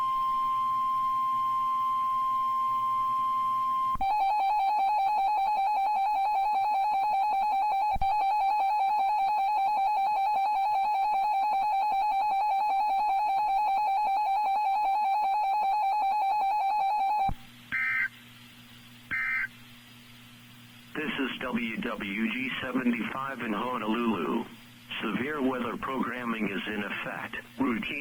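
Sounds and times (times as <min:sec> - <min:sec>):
data tones burst: 0:00.0 - 0:18.2, 0:19.1 - 0:19.6.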